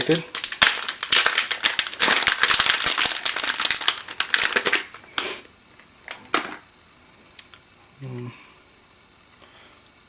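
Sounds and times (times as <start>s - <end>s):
packaging crinkling: 0.0s - 5.3s.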